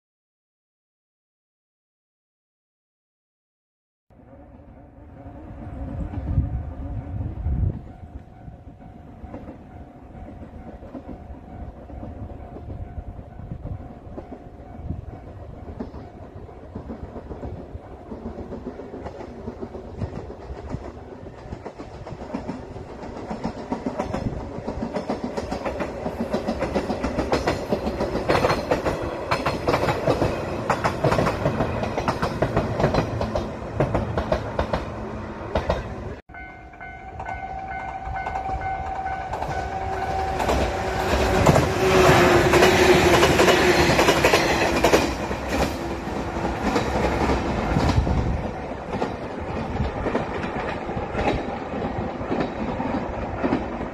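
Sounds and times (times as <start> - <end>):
crossing warning bell: 4.7 - 18.4, 36.3 - 45.0
train wheels clacking on rails: 7.7 - 36.2, 36.8 - 53.9.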